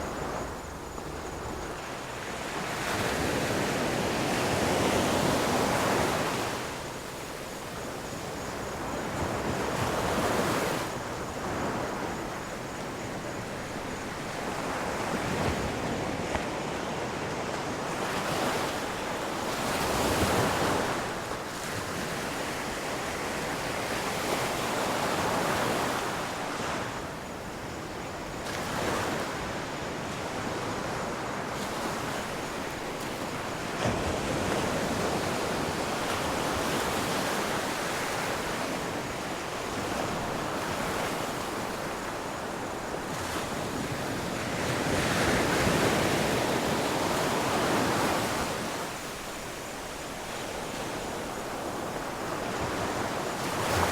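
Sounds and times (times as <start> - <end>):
waves crashing on shore: 42.7 - 53.9.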